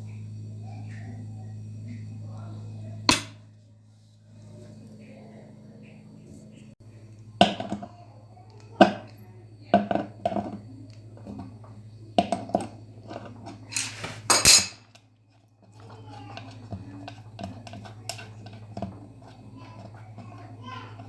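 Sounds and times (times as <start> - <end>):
steady low hum: 0.0 - 21.0
metal tools clinking: 13.7 - 14.8.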